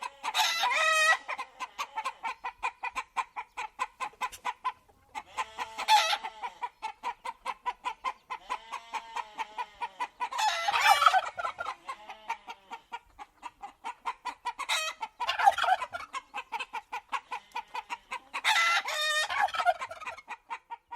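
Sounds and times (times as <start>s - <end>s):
chickens clucking: 0.0s - 20.9s
loud fowl calls: 0.0s - 20.9s.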